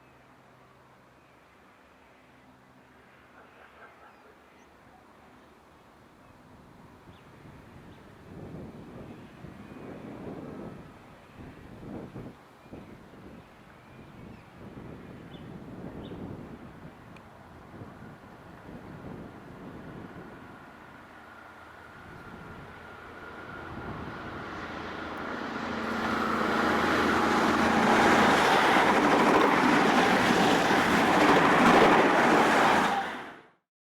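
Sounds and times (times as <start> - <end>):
diesel train passing: 0.6 - 7.1, 15.7 - 33.6
wind buffeting microphone: 7.1 - 20.7, 22.0 - 33.0.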